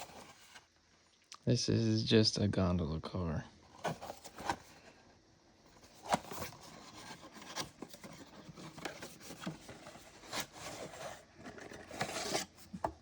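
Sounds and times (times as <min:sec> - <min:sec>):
cardboard rubbing and scraping: 0:00.0 - 0:00.6, 0:05.8 - 0:13.0.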